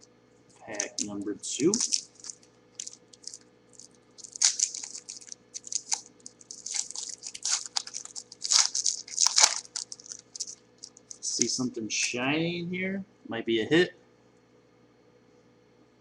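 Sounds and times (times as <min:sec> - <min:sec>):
wrapper crinkling and tearing: 0:00.7 - 0:11.6.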